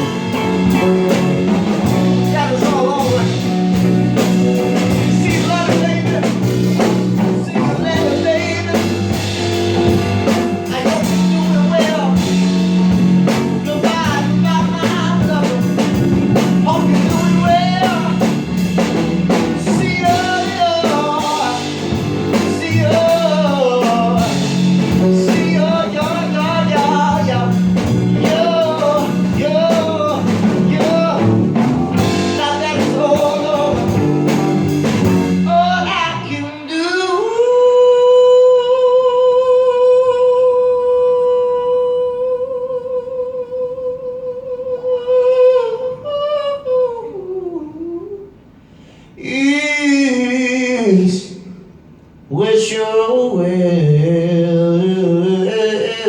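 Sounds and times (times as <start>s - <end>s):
blues-rock band playing: 0.0s - 36.3s
electric guitar sliding phrases: 0.0s - 37.0s.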